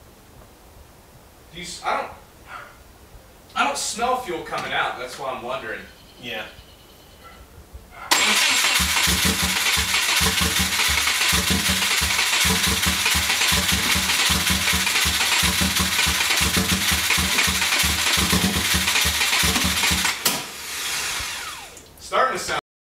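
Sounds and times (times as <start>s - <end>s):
engine cranking by starter: 8.1s - 21.9s.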